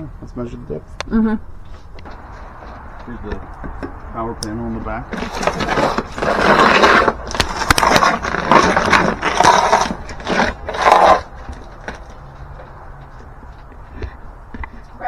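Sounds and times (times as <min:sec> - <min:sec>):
scraping and rustling: 0:05.0 - 0:13.7.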